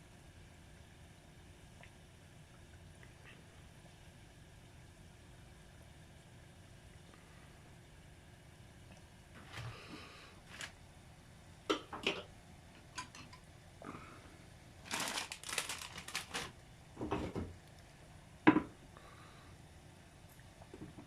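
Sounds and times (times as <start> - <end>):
crinkly rustling: 9.4 - 9.8, 10.4 - 10.8, 14.8 - 16.6.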